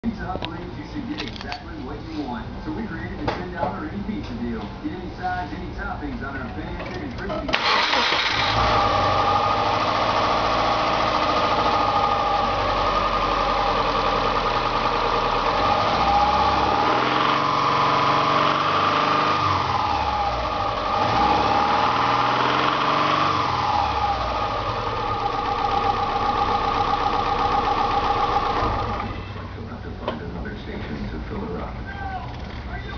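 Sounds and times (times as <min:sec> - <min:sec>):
engine rattle: 0:07.0 - 0:31.6, 0:32.3 - 0:32.9
car engine idling and revving: 0:07.5 - 0:30.3.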